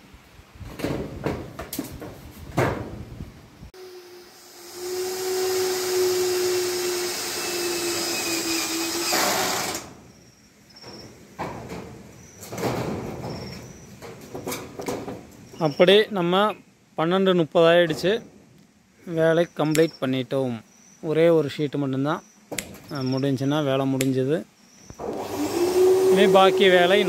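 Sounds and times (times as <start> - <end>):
handheld power tool running: 3.8 - 9.9, 25.0 - 27.0.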